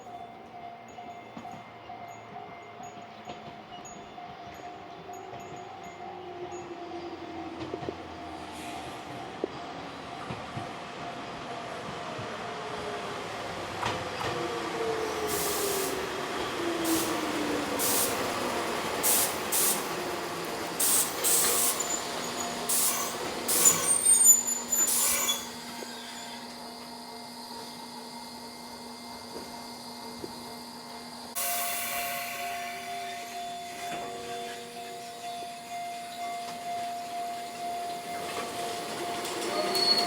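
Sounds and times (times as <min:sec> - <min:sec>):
air brake hisses: 0:15.3 - 0:16.0, 0:16.9 - 0:18.2, 0:22.7 - 0:26.6, 0:31.4 - 0:34.7
electric train motor whine: 0:15.4 - 0:40.0.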